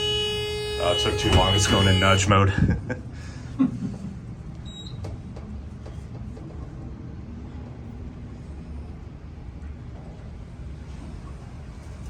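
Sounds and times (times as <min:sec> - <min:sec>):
elevator cab humming: 0:00.0 - 0:06.4
elevator doors thumping shut: 0:01.0 - 0:02.1.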